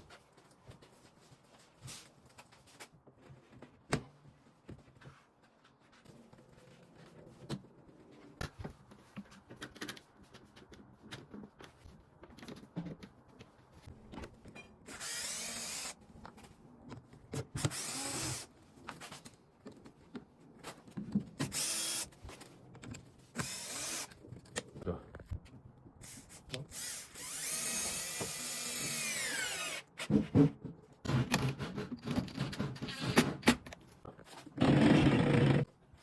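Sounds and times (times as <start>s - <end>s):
cordless drill driving screws: 14.9s - 16.0s, 17.6s - 18.5s, 21.4s - 22.1s, 23.4s - 24.1s, 26.7s - 30.0s.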